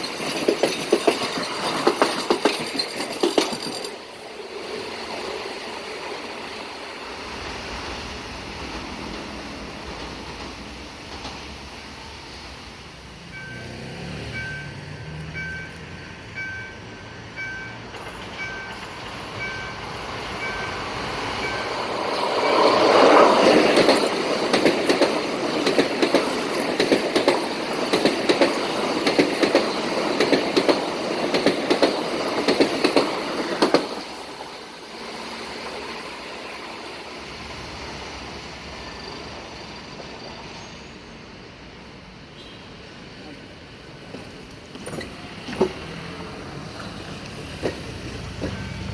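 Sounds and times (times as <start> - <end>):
train wheels clicking over rail joints: 0.0 - 12.0, 17.4 - 36.3, 43.8 - 48.9.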